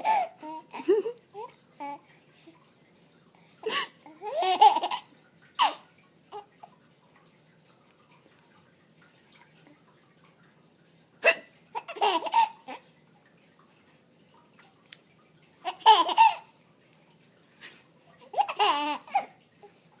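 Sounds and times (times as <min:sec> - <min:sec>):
baby laughing: 0:00.0 - 0:02.0, 0:03.7 - 0:06.5, 0:11.3 - 0:12.8, 0:15.6 - 0:16.5, 0:18.2 - 0:19.4.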